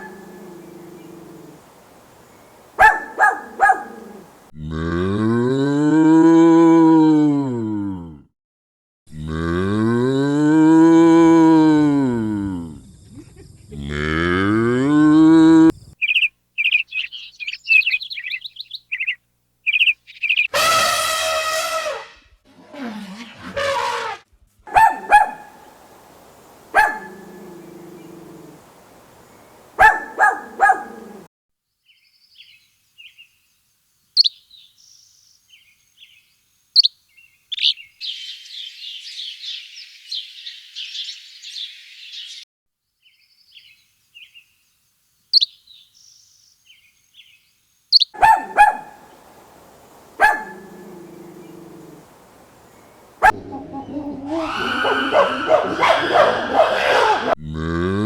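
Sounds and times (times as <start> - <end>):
dog barking: 0.0 - 1.4, 2.8 - 4.4, 24.7 - 25.7, 26.7 - 28.7, 29.7 - 31.3, 48.2 - 49.2, 50.1 - 52.2, 53.2 - 57.4
songbird trilling: 0.0 - 4.4, 16.0 - 20.5, 45.4 - 45.6, 47.9 - 57.2.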